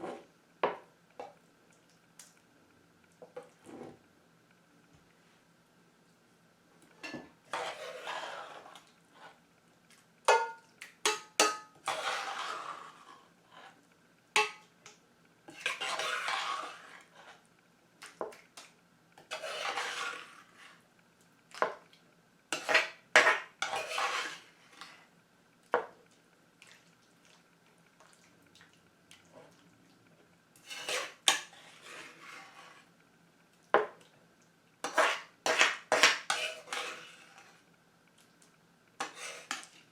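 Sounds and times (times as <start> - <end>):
utensils scraping dishes: 7.0 - 8.8, 11.1 - 13.8, 15.5 - 17.0, 19.2 - 20.6, 22.6 - 24.5, 30.6 - 32.8, 34.9 - 37.5, 39.0 - 39.8.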